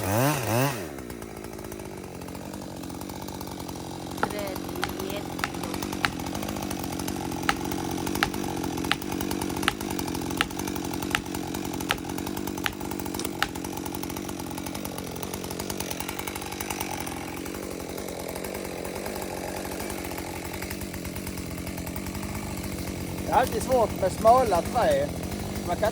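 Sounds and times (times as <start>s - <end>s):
chainsaw running: 0.0s - 25.9s
blows driving a wedge: 2.6s - 14.3s.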